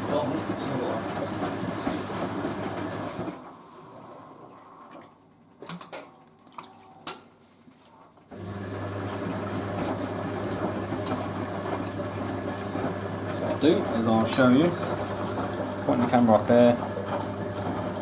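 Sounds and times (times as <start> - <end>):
washing machine filling with water: 0.0 - 7.0, 8.3 - 18.0.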